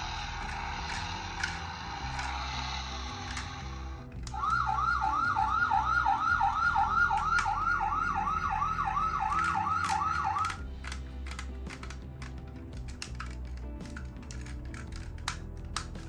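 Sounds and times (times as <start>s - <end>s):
toy electronic siren whooping: 4.3s - 10.6s.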